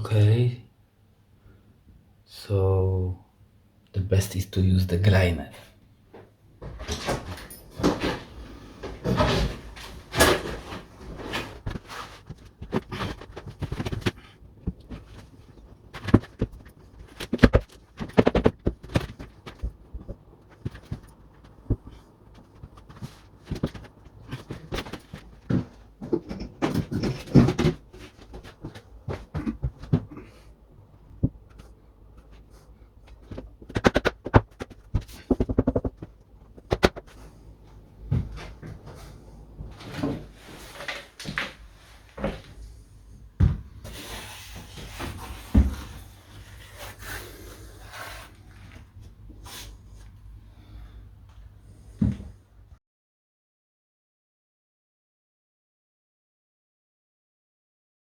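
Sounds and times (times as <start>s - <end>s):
knocks and clatters on wall: 6.6s - 30.4s, 31.1s - 37.2s.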